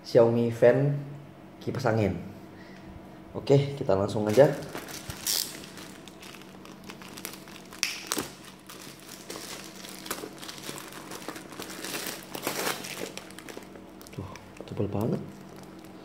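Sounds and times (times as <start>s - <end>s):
plastic packaging crinkling: 4.2s - 16.0s.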